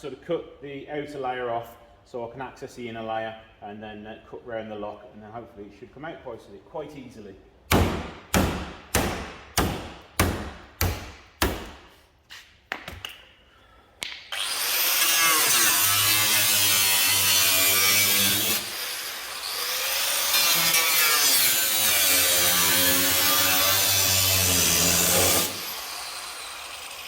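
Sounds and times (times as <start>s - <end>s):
hard knocks on metal: 7.7s - 11.9s
power cutting tool cutting metal: 14.3s - 27.0s.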